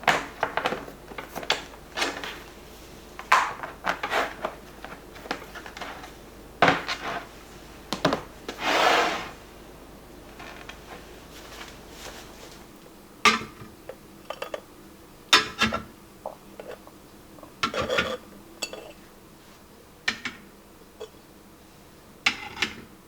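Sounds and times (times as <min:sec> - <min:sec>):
kitchenware clinking and clattering: 0:15.4 - 0:19.0.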